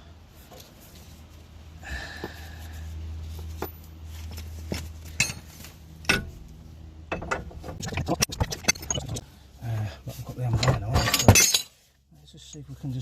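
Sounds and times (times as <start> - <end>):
low steady hum: 0.0 - 13.0
metal clinks and knocks: 3.4 - 6.5, 7.1 - 7.8, 10.4 - 11.8.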